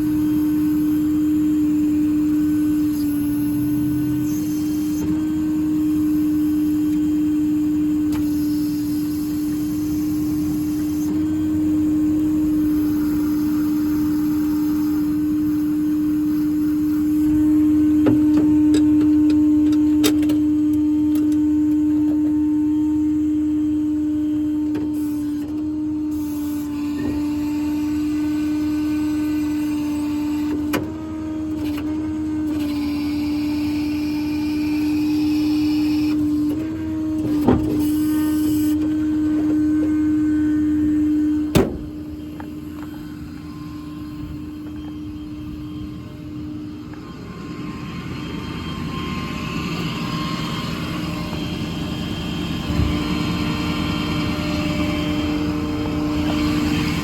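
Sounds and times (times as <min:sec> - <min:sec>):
diesel truck engine whine: 0:00.0 - 0:57.0.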